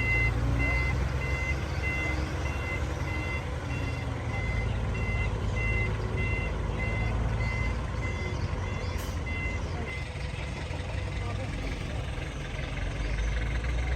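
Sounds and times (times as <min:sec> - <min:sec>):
reversing alarm beeping: 0:00.0 - 0:10.5
low engine rumble: 0:00.0 - 0:13.9.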